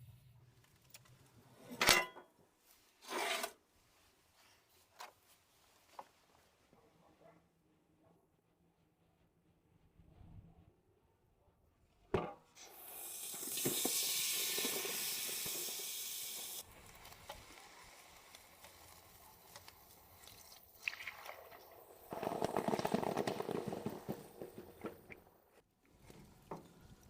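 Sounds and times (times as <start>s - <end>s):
loud steady hiss: 12.8s - 19.4s
crackling noise: 14.6s - 27.0s.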